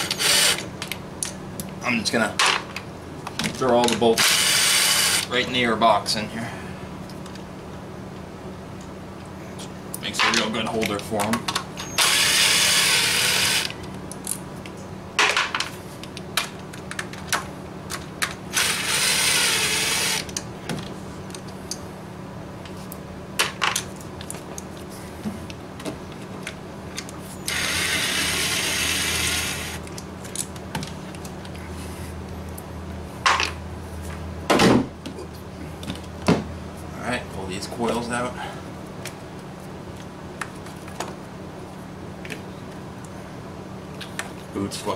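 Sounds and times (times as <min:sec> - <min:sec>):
power tool spinning bolts: 0:00.0 - 0:00.7, 0:04.1 - 0:05.3, 0:11.8 - 0:13.8, 0:18.5 - 0:20.3, 0:27.5 - 0:29.8.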